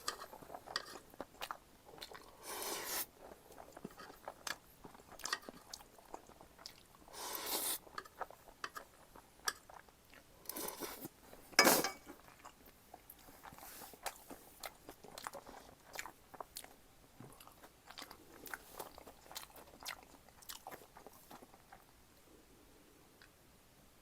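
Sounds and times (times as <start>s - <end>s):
chewing with wet mouth clicks: 3.2s - 7.0s, 12.1s - 21.9s.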